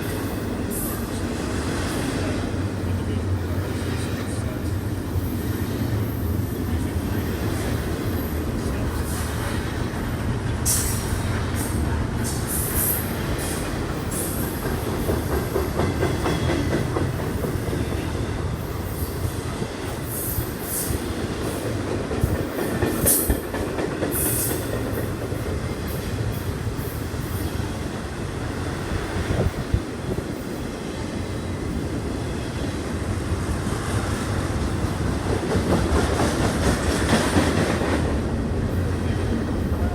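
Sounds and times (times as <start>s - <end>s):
train rumbling on rails: 0.0s - 39.9s
train wheel squeals: 3.6s - 21.6s.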